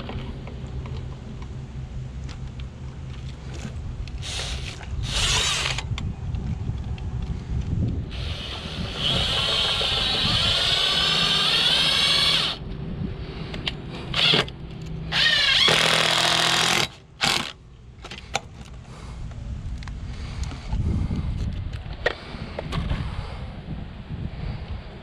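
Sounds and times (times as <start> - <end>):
power drill whining: 4.2 - 5.8, 8.1 - 12.6, 14.1 - 14.5, 15.1 - 17.6.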